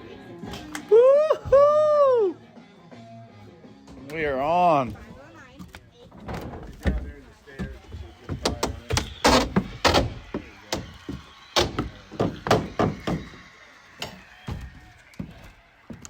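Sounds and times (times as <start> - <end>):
wooden boards knocking: 6.6 - 13.4.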